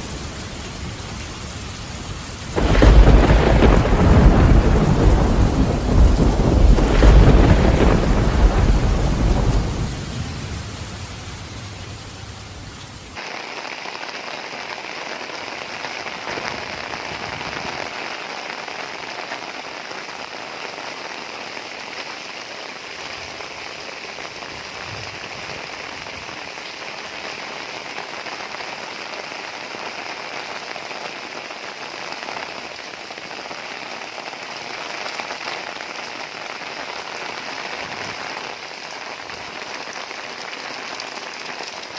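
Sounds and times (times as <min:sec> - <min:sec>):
heavy rain falling: 0:00.0 - 0:41.9
low thunder rumble: 0:02.6 - 0:12.4.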